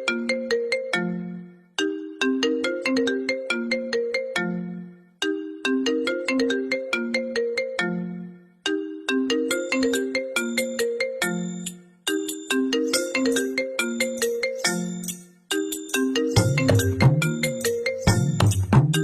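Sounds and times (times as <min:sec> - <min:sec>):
chime-like phone ringtone: 0:00.0 - 0:19.0.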